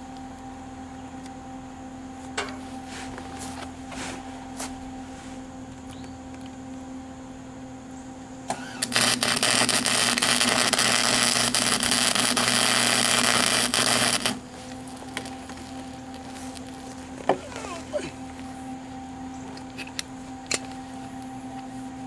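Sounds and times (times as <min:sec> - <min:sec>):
arc welding crackle: 0:08.4 - 0:22.0
welding arc pop: 0:08.5 - 0:17.4.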